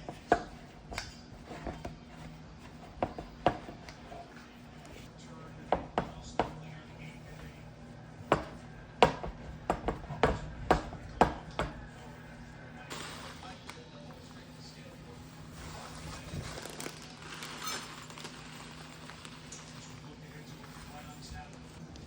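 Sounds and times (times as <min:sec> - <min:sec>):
knife knocking on cutting board: 0:08.3 - 0:11.8.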